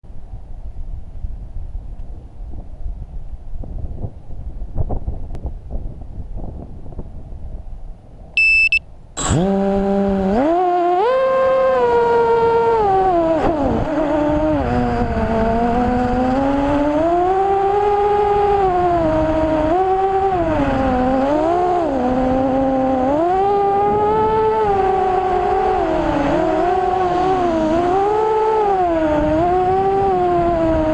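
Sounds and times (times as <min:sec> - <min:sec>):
short electronic beep: 0:08.4 - 0:09.4
quadcopter motors whining: 0:08.4 - 0:30.9.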